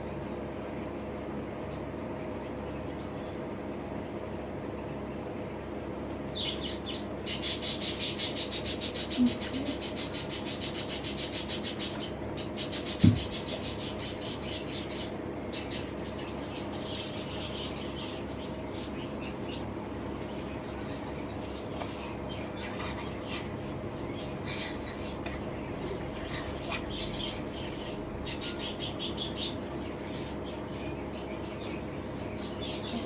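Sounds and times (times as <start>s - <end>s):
steady low hum: 0.0s - 33.0s
budgerigars chirping: 6.4s - 19.6s, 26.3s - 33.0s
short thump: 13.0s - 13.3s.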